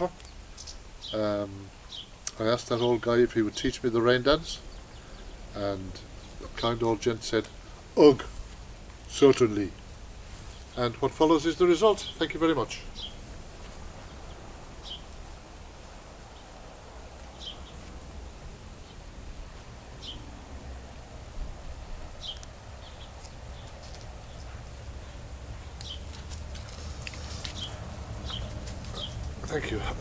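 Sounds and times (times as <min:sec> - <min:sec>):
bird chirping: 0:00.0 - 0:07.4, 0:10.5 - 0:13.2, 0:14.0 - 0:15.2, 0:17.3 - 0:17.9, 0:20.0 - 0:20.3, 0:22.2 - 0:26.2, 0:26.8 - 0:30.0.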